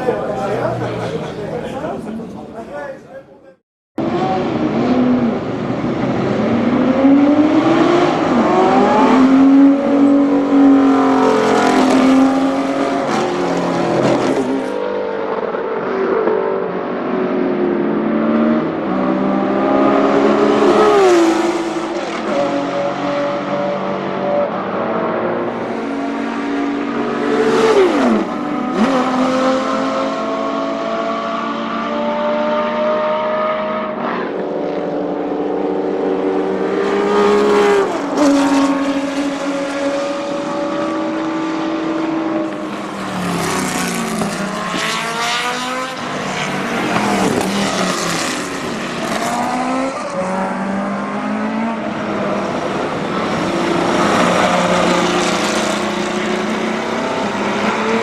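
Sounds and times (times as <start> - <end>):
race car engines at full throttle: 0.0 - 3.4, 4.0 - 58.0.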